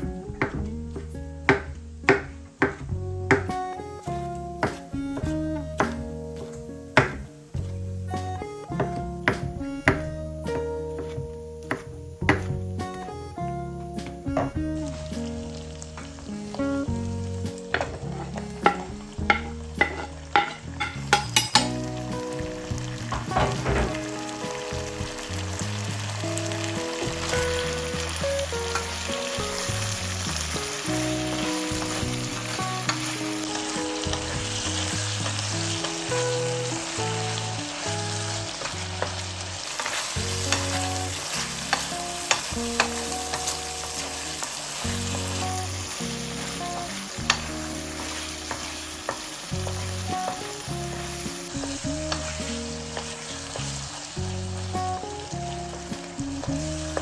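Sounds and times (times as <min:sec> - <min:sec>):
utensil tapping a pan: 0:00.3 - 0:03.6, 0:04.6 - 0:07.3, 0:08.8 - 0:13.0, 0:17.7 - 0:26.0
food sizzling in a frying pan: 0:14.4 - 0:57.0.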